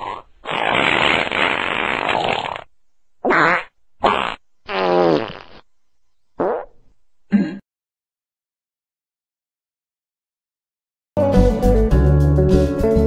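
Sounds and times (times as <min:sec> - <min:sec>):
farts: 0:00.0 - 0:05.6, 0:06.4 - 0:06.8.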